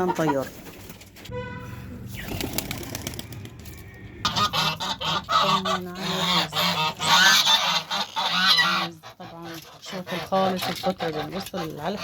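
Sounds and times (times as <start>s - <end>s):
geese honking: 4.2s - 12.0s.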